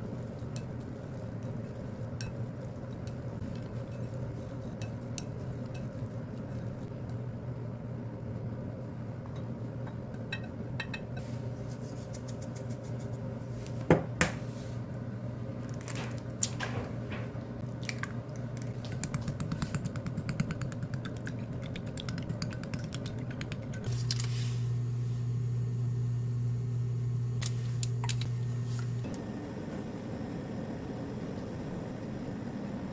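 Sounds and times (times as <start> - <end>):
kitchen appliance motor humming: 23.9 - 32.9.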